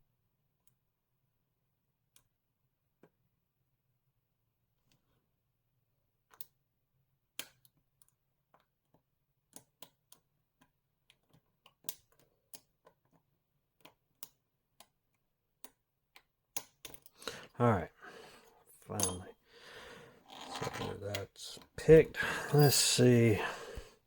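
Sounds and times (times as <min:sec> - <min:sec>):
lock pick clicking on pins: 0:07.4 - 0:13.2, 0:15.6 - 0:17.2, 0:18.9 - 0:19.3.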